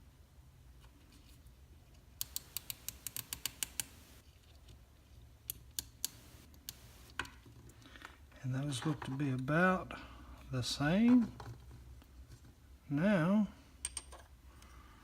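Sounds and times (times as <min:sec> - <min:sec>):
zip tie plastic clicks: 0:02.2 - 0:04.2.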